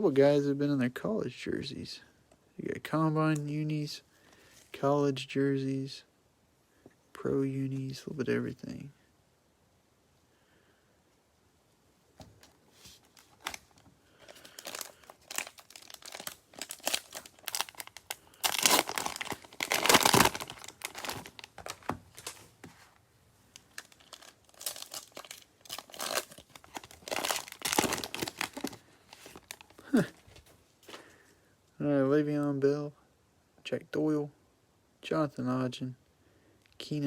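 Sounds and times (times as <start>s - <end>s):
cellophane crinkling and tearing: 13.0s - 22.9s, 23.5s - 30.4s.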